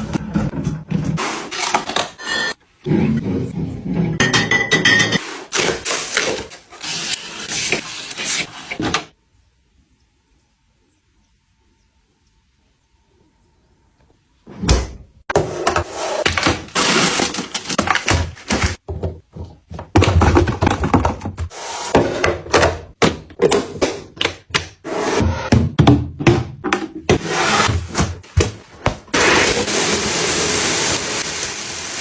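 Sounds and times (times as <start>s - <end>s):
household items knocking and rustling: 15.3s - 24.8s, 25.5s - 29.2s.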